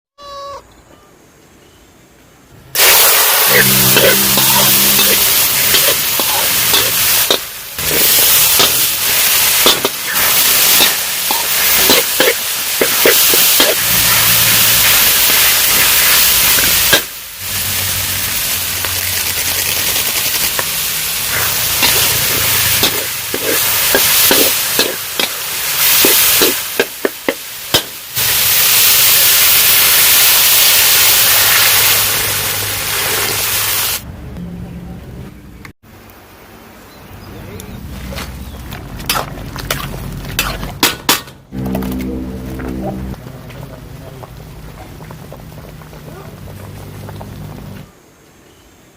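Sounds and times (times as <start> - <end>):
food sizzling in a pan: 2.8 - 34.0
scraping in a pan: 3.4 - 17.0.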